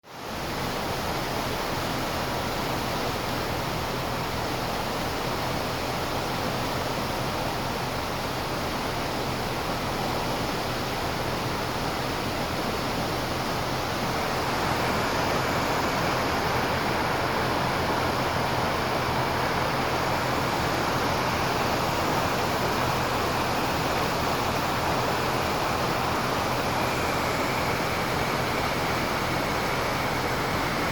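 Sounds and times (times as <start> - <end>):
floodwater rushing: 12.4 - 30.9.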